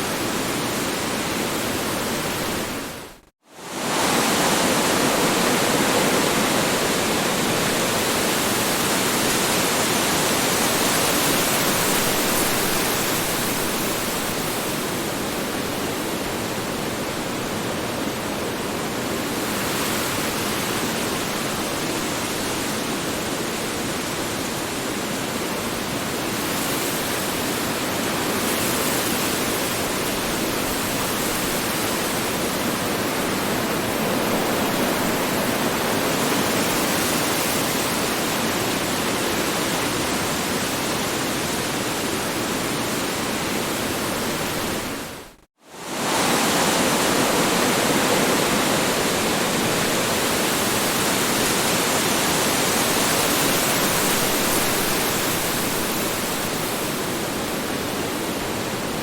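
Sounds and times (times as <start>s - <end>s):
strong wind blowing: 29.9s - 59.0s.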